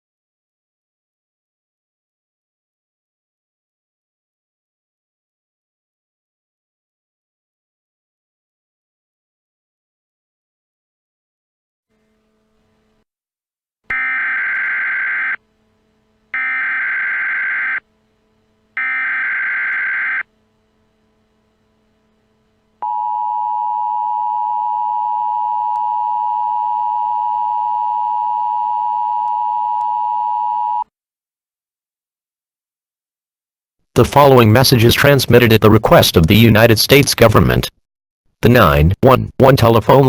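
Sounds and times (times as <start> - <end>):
screeching data bursts: 13.9 - 15.4, 16.4 - 17.8, 18.8 - 20.3
two-tone attention signal: 13.9 - 15.4, 16.4 - 17.8, 18.8 - 20.3, 22.8 - 30.8.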